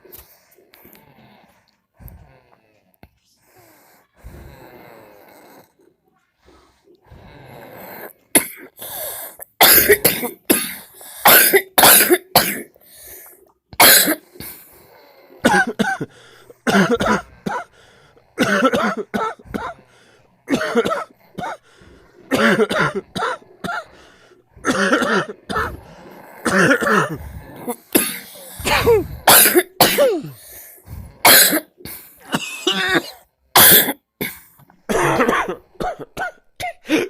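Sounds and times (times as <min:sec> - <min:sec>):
man coughing harshly: 0:08.4 - 0:08.7, 0:09.6 - 0:12.7, 0:13.8 - 0:14.2, 0:15.5 - 0:17.7, 0:18.4 - 0:19.8, 0:20.5 - 0:21.6, 0:22.3 - 0:23.9, 0:24.6 - 0:25.8, 0:26.4 - 0:30.4, 0:31.2 - 0:37.0.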